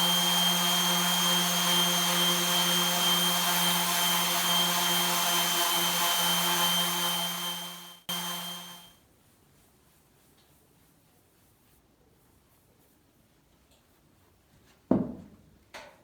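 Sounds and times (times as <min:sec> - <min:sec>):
power tool motor humming: 0:00.0 - 0:08.8.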